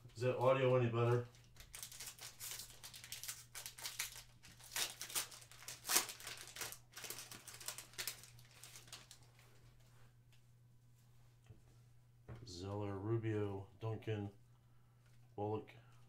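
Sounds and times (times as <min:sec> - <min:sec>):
foil wrapper crinkling and tearing: 0:00.3 - 0:09.4.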